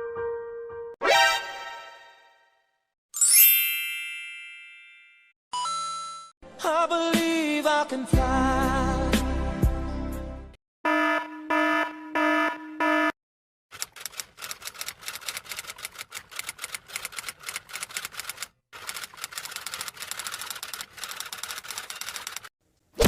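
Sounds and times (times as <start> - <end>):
rapid key clatter: 13.7 - 22.5.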